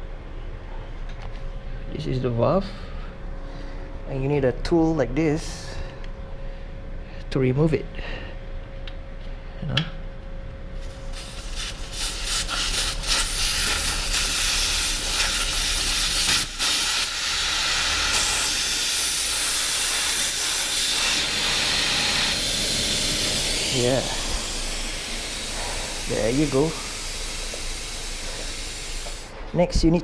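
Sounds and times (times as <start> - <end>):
air hissing out of tyre: 10.8 - 29.4
valve tool clicks: 11.1 - 29.3.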